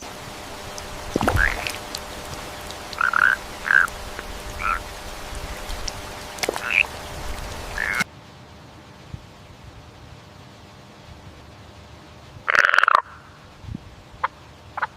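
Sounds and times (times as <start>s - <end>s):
steady background noise: 0.0s - 14.9s
frog croaking: 0.8s - 5.0s, 5.7s - 7.0s, 7.7s - 8.0s, 12.5s - 13.4s.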